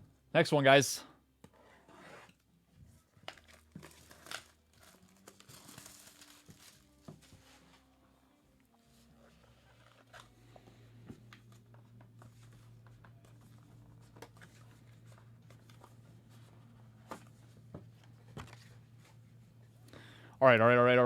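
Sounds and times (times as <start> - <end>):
packaging clicks and rustling: 3.2 - 7.1.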